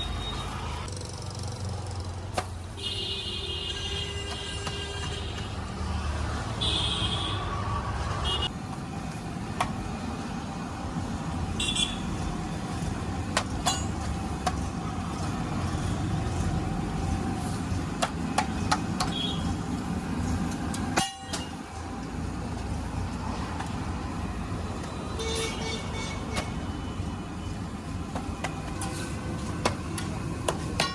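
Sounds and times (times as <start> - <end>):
traffic rumble: 0.0 - 30.9
vehicle horn toots: 25.1 - 26.9.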